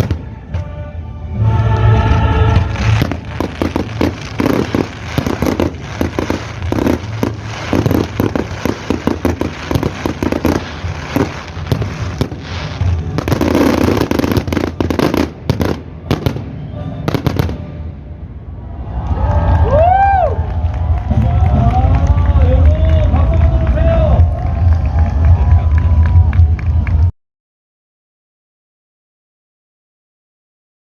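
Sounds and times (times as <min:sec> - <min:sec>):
fireworks bursting and crackling: 0:00.0 - 0:00.4, 0:01.8 - 0:17.8.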